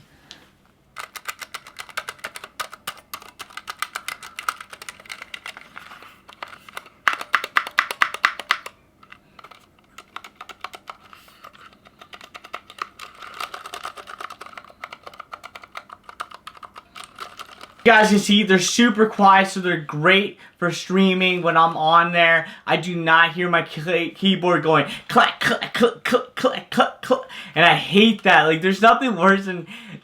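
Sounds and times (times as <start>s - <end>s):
fast typing on keyboard: 1.0s - 18.2s.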